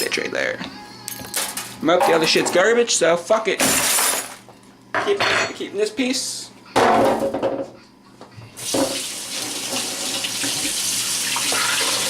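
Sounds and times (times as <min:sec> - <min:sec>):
water running into sink: 0:08.6 - 0:12.0.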